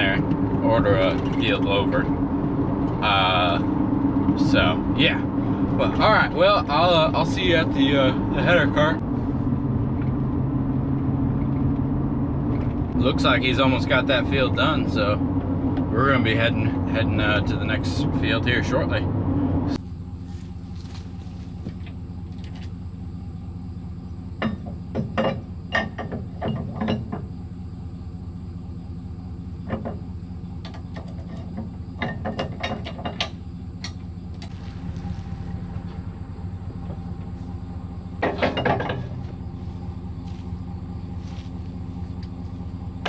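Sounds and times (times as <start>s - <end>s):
rattling and clunking: 0.0s - 7.6s, 19.1s - 43.0s
vehicle engine running: 0.0s - 43.0s.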